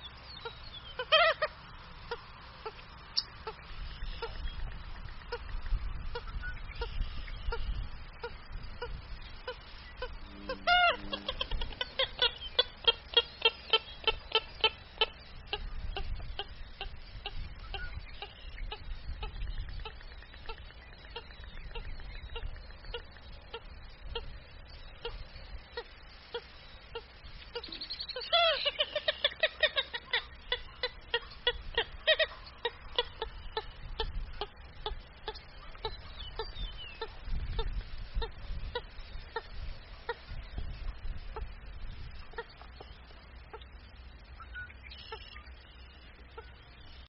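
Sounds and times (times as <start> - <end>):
bird clucking calls: 0.0 - 45.6, 46.2 - 47.0.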